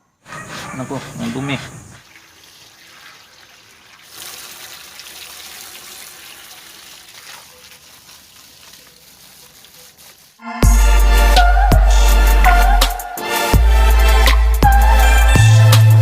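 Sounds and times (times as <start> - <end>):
water running: 1.4 - 10.4.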